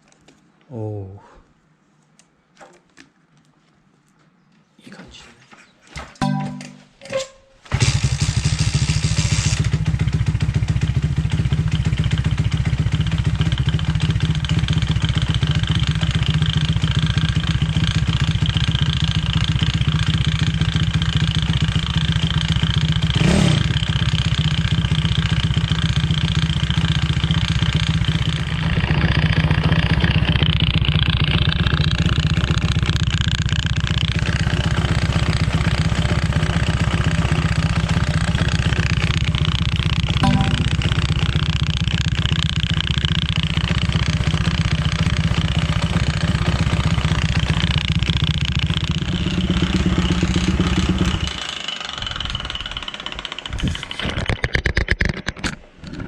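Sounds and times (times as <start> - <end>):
small motorcycle engine running: 7.7 - 56.0.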